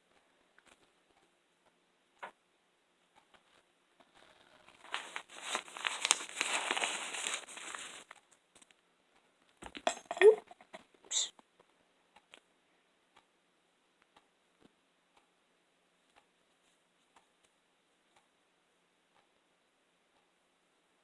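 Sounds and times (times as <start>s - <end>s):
rustling and crinkling: 3.3s - 8.8s.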